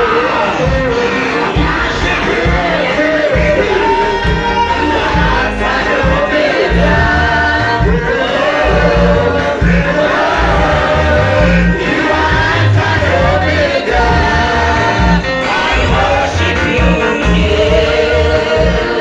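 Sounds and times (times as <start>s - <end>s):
band with strong bass line: 0.0s - 19.0s
gospel singing: 0.0s - 19.0s.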